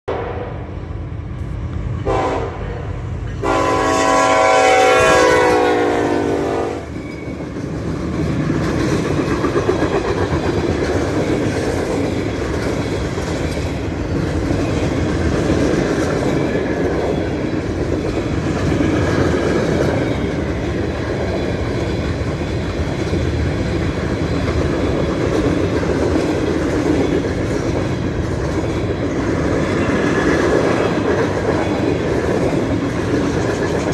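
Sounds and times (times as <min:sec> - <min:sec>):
train horn blasts: 0:00.1 - 0:00.8, 0:02.0 - 0:06.9
train wheels rumbling and clattering: 0:00.5 - 0:33.9.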